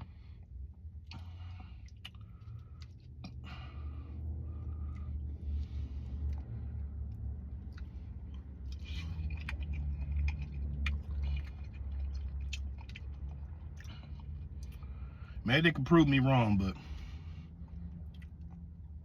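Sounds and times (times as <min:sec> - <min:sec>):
person chewing: 0:04.9 - 0:15.0, 0:17.7 - 0:18.6.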